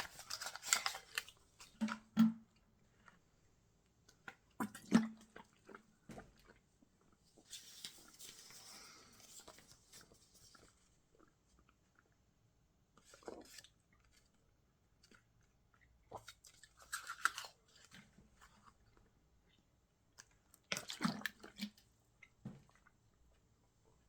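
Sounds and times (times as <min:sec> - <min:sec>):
person chewing paper: 0:00.0 - 0:01.7, 0:15.0 - 0:19.2.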